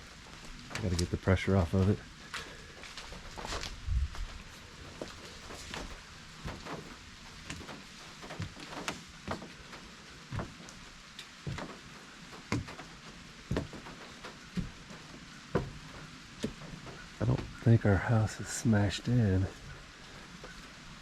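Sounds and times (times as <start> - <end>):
footsteps walking: 0.2 - 1.1, 1.7 - 17.6.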